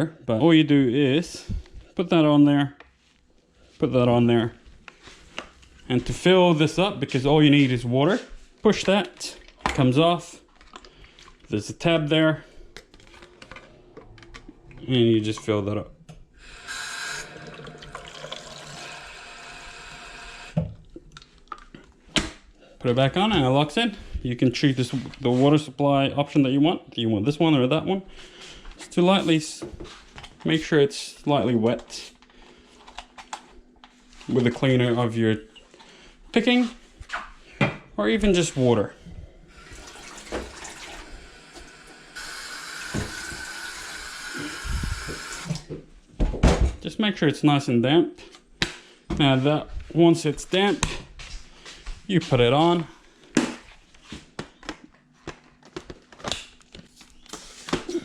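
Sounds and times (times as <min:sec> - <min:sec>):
water pouring into tank: 0:16.5 - 0:19.7, 0:39.5 - 0:45.6.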